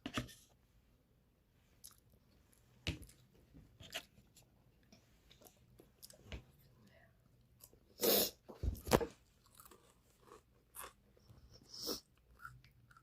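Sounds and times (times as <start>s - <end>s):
person chewing and crunching food: 1.8s - 3.3s, 5.3s - 6.5s, 8.8s - 13.0s.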